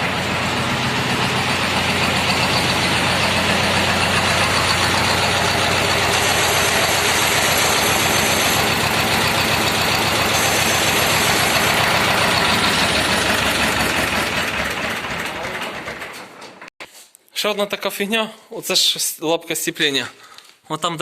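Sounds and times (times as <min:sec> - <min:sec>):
tractor diesel engine idling: 0:00.0 - 0:16.6.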